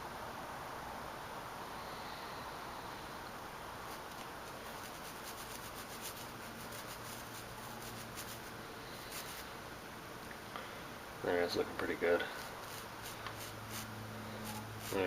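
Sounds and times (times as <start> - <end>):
knife blade scraping grease: 12.3 - 15.0.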